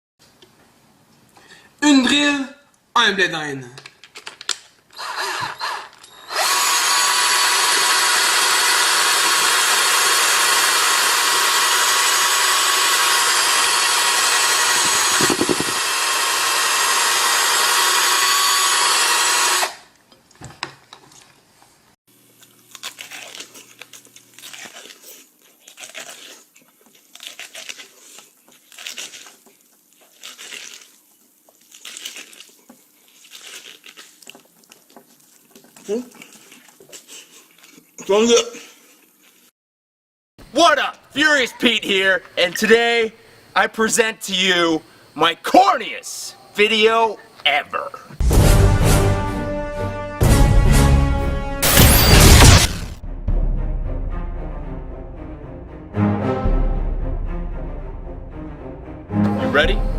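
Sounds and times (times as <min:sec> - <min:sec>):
power drill whining: 0:04.9 - 0:19.9.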